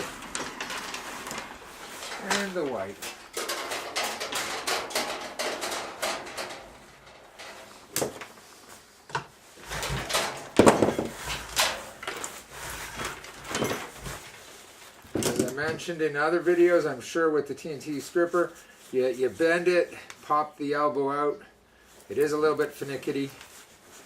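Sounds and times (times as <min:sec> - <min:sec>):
tools knocking and clattering: 0:00.0 - 0:08.4, 0:09.1 - 0:14.2, 0:15.1 - 0:15.8.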